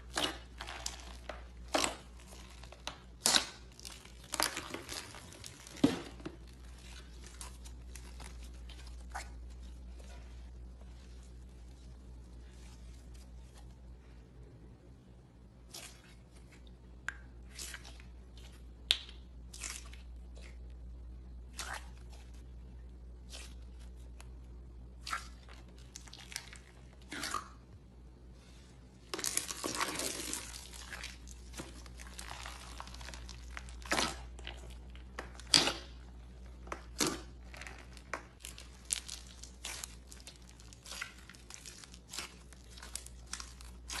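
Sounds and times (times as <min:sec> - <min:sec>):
slime crackling and popping: 0:00.0 - 0:09.3, 0:29.2 - 0:44.0.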